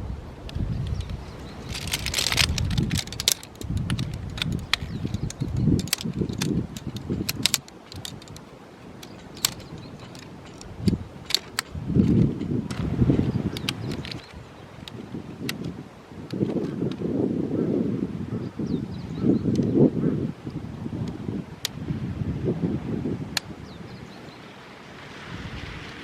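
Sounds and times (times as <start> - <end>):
light metallic clicks and clatters: 0.5 - 12.9, 13.5 - 15.7
rustling: 0.5 - 14.9.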